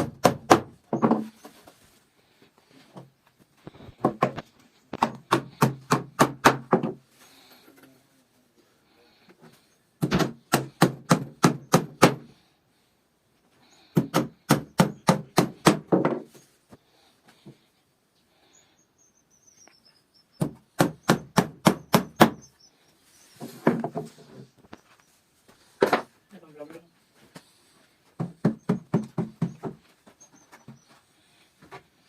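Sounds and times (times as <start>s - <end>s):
hammering on wood: 0.0s - 1.3s, 4.0s - 4.4s, 5.0s - 7.0s, 10.0s - 12.3s, 13.9s - 16.3s, 20.4s - 22.4s, 28.2s - 29.9s
faint squeak: 30.1s - 31.0s.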